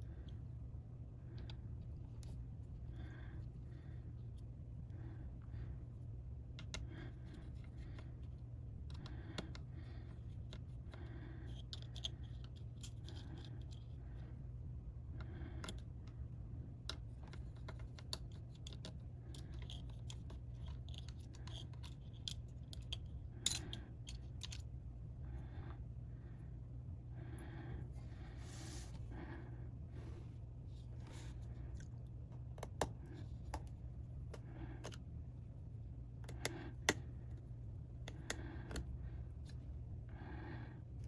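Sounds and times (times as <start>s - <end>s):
steady low hum: 0.0s - 41.0s
small tools clicking and tapping: 16.8s - 24.7s.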